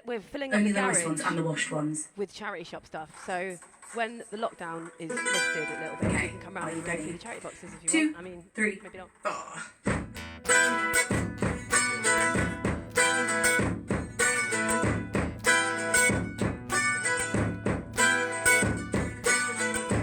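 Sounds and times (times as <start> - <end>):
acoustic guitar strumming: 5.0 - 7.2, 9.9 - 20.0
percussive beat: 6.0 - 6.6, 9.9 - 20.0.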